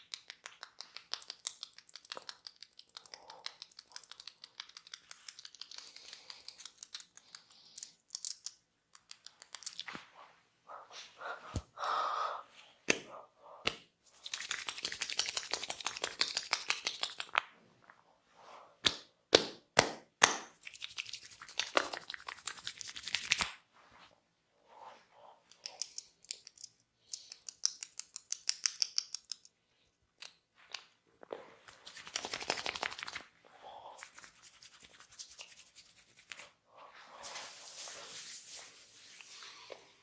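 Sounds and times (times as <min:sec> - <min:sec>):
hands scratching and rubbing: 0:00.0 - 0:11.7, 0:12.9 - 0:18.0, 0:20.6 - 0:24.1, 0:30.2 - 0:40.0.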